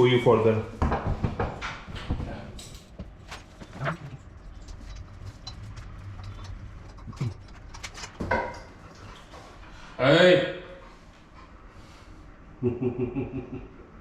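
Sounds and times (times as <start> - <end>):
low steady hum: 0.0 - 14.0
metal tools clicking and knocking: 3.7 - 8.8.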